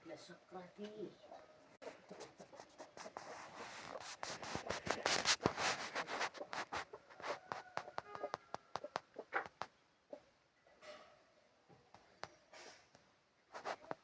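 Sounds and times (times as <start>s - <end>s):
rapid scratching scrapes: 1.8s - 9.7s, 13.5s - 14.0s.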